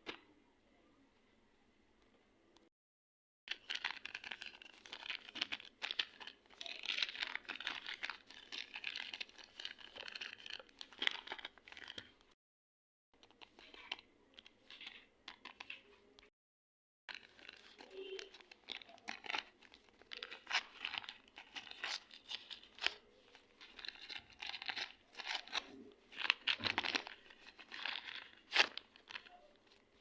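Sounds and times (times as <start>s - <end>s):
wrapping crinkling and tearing: 3.5s - 12.4s, 17.1s - 30.0s.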